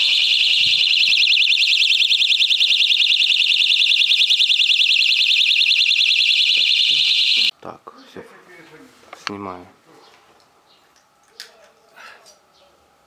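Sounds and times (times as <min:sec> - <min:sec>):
fire alarm warbling: 0:00.0 - 0:07.5.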